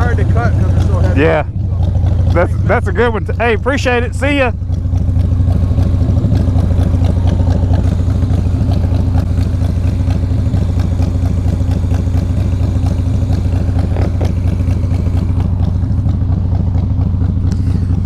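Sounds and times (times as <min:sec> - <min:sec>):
motorcycle engine running: 0:00.0 - 0:18.0.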